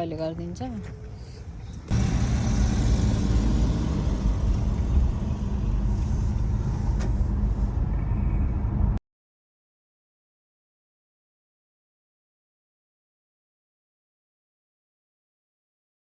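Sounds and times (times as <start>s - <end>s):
car engine and road rumble: 0.0s - 9.0s.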